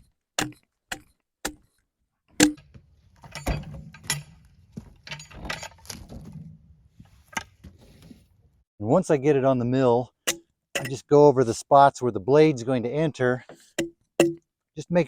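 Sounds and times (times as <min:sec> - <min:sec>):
knocks and scraping: 0:02.3 - 0:08.6
axe striking log: 0:02.4 - 0:05.1
low steady hum: 0:02.4 - 0:08.6.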